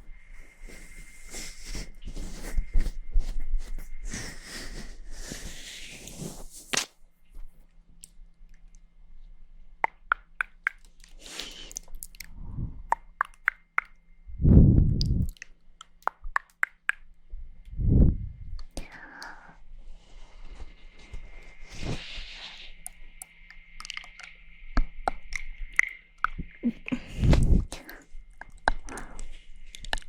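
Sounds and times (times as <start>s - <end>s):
wet tongue and lip clicks: 9.8s - 14.0s, 14.9s - 17.1s, 18.6s - 19.4s, 22.7s - 30.0s
rumbling bursts against microphone: 14.3s - 15.3s, 17.7s - 18.6s.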